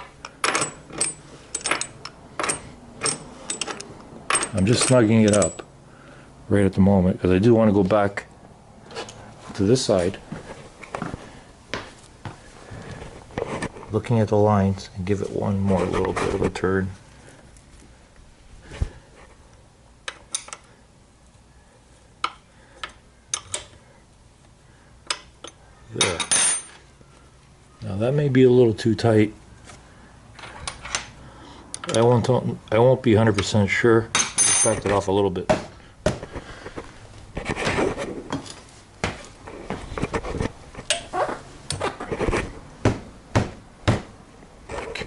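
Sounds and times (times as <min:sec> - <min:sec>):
hand tools clicking on metal: 0:00.2 - 0:05.7.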